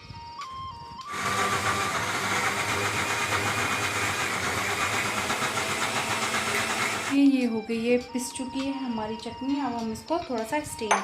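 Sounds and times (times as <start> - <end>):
mixer grinder running: 1.0 - 7.2.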